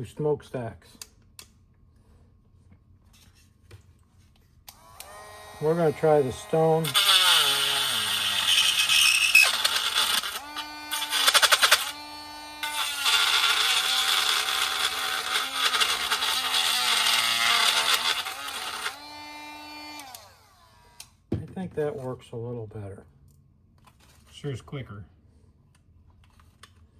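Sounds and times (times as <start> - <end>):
rotary tool grinding plastic: 4.7 - 21.2
rotary tool high whine: 4.7 - 21.2.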